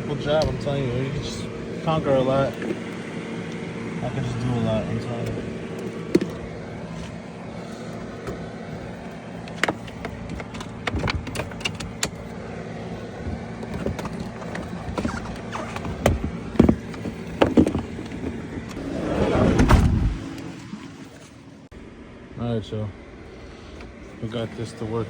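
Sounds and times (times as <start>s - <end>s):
steady low hum: 0.0s - 25.0s
clicks and knocks of handling: 9.4s - 12.3s, 13.2s - 18.8s
heavy thumps: 18.8s - 20.4s.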